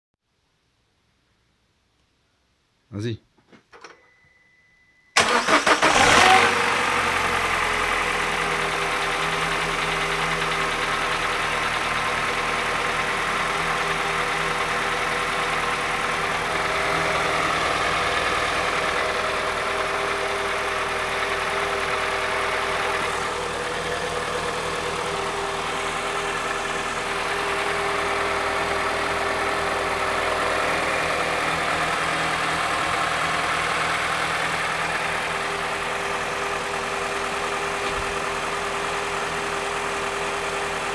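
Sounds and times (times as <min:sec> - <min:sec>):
starter motor cranking: 0:05.2 - 0:06.4
car engine idling: 0:05.2 - 0:40.9.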